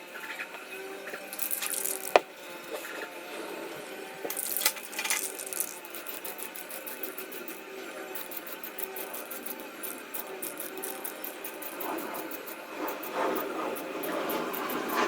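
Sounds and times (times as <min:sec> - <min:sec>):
spray can hissing: 0:01.3 - 0:02.3, 0:04.3 - 0:15.0.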